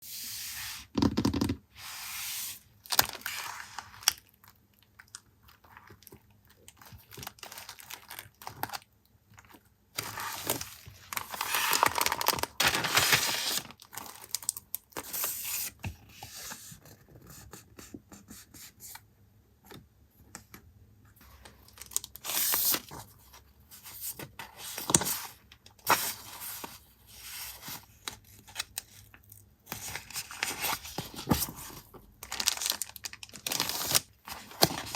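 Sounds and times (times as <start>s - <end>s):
paper rustling and tearing: 10.0s - 14.4s, 29.8s - 34.9s.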